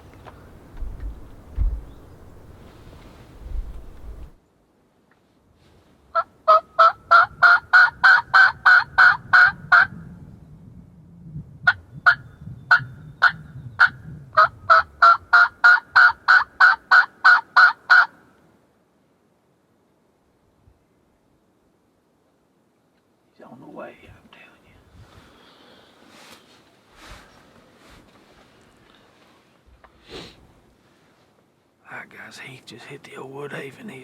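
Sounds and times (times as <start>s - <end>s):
turkey call yelps: 6.2s - 9.9s, 11.7s - 18.2s.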